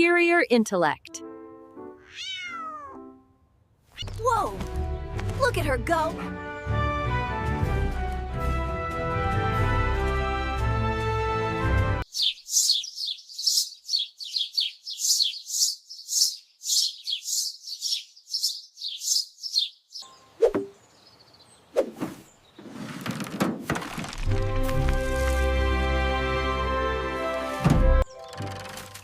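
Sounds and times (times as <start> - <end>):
small bird chirping: 12.0 - 22.6.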